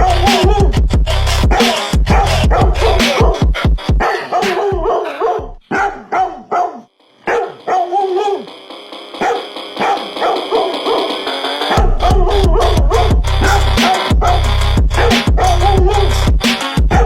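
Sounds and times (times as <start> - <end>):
sampled dog barks: 4.0 - 8.5, 9.2 - 11.9.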